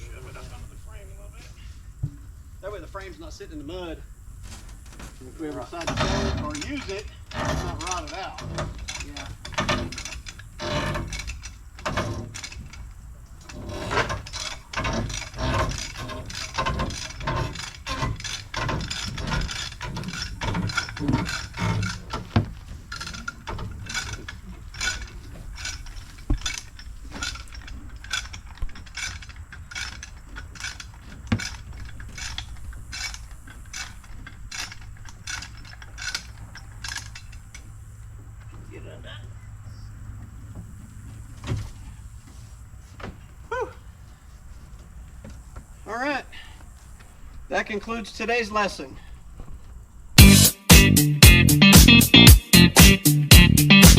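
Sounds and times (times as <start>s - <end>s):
cable puller ratcheting: 5.5s - 37.7s.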